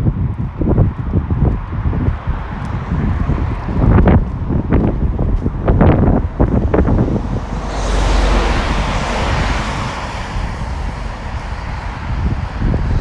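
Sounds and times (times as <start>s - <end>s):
wind gusting against microphone: 0.0s - 13.0s
vehicle tyre spray hiss: 6.5s - 12.4s.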